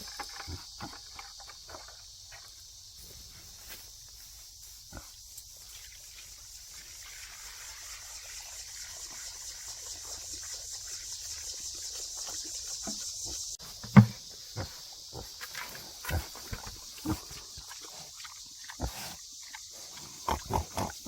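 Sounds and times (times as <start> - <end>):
insects chirring: 0.0 - 21.0
faint knocks: 13.8 - 14.2.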